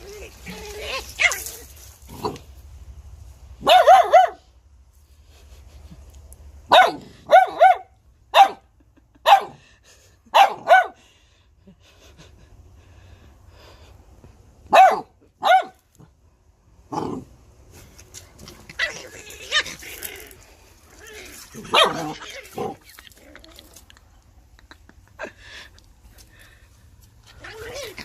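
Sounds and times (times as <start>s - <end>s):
dog barking: 3.6s - 4.5s, 6.7s - 9.6s, 10.4s - 11.0s, 14.7s - 15.8s, 21.7s - 22.1s.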